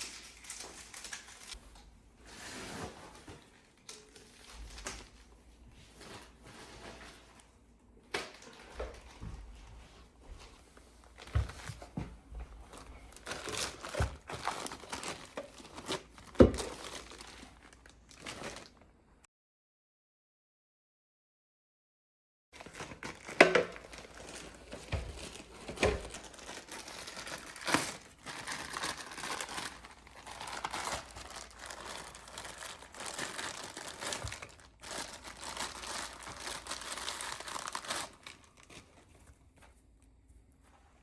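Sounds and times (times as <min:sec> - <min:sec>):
packaging crinkling: 0:00.0 - 0:01.6, 0:12.6 - 0:18.8, 0:22.6 - 0:39.0.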